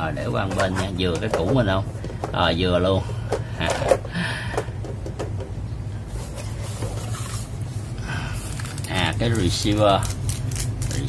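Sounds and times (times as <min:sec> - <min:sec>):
steady low hum: 0:00.0 - 0:11.0
packaging rustling: 0:06.3 - 0:11.0.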